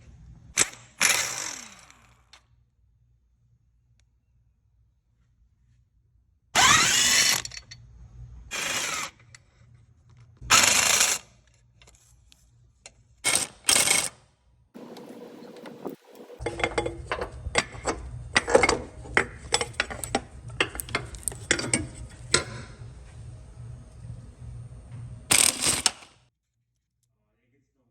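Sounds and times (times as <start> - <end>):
power tool bursts: 0.6 - 2.1, 6.6 - 7.5, 8.5 - 9.2, 10.5 - 11.2, 14.8 - 16.4
hand tools clicking and knocking: 14.8 - 22.6.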